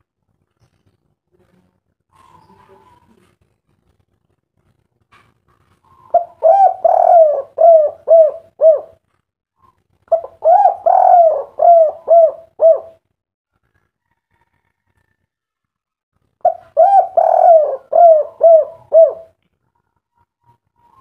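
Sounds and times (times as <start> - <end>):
dove cooing: 5.8 - 9.0, 9.6 - 13.0, 16.4 - 19.4.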